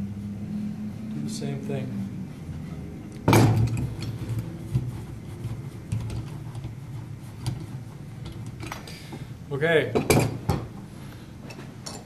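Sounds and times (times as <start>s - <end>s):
loud metal clank: 3.3s - 3.9s
metal parts clicking and rattling: 11.5s - 12.0s.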